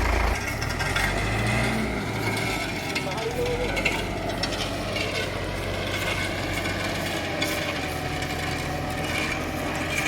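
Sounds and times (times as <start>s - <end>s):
idling machinery engine hum: 0.0s - 10.0s.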